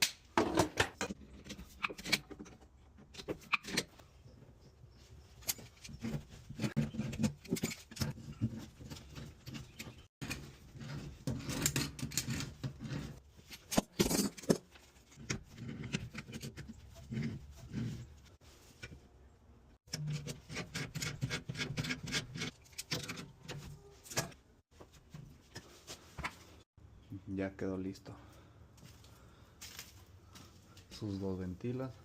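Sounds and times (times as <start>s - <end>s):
metal tools and fittings clinking: 1.0s - 18.0s, 19.9s - 24.4s.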